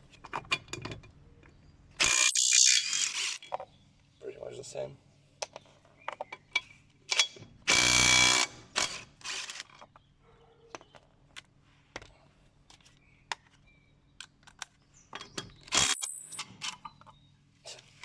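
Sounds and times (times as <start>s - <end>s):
clicks and knocks of tool handling: 14.2s - 17.2s.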